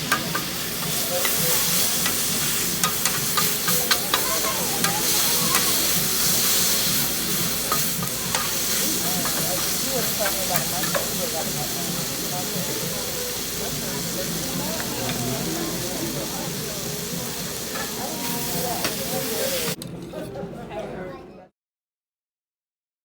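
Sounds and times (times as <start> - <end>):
metal utensils tapping hot plate: 0.0 - 11.6, 17.7 - 19.7
food sizzling on a griddle: 0.0 - 19.8.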